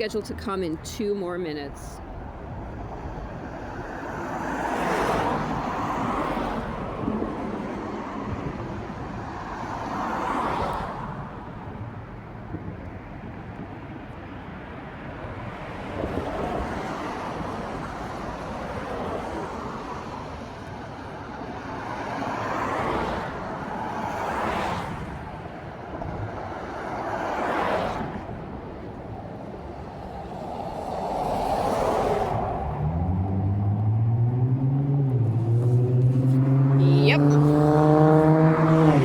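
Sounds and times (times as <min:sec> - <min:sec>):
cars passing: 0:00.0 - 0:39.0
steady traffic rumble: 0:00.0 - 0:39.0
engine accelerating: 0:32.6 - 0:39.0.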